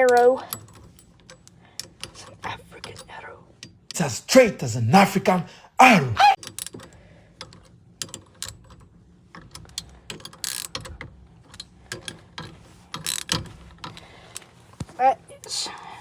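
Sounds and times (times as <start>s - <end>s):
metallic tool clicks and rattles: 0.0s - 4.0s, 6.4s - 14.5s.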